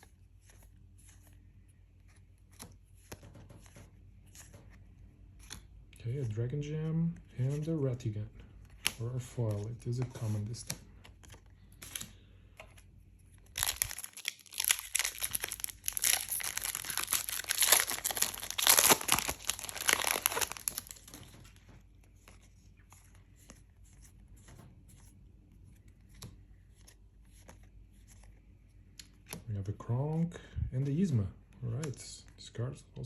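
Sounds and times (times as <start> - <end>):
cards clicking while handled: 2.3 - 5.7
foil wrapper tearing and crinkling: 13.5 - 21.4.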